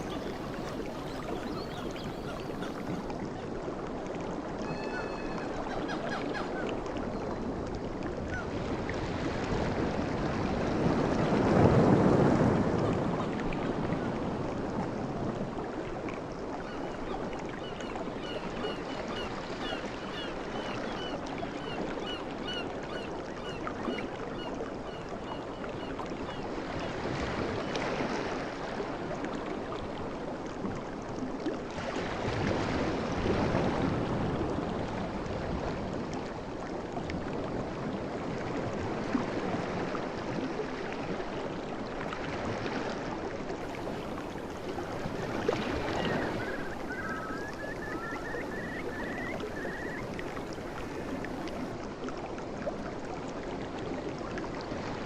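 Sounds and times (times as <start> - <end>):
sea waves washing in: 0.0 - 4.7, 8.6 - 16.2, 42.1 - 51.9.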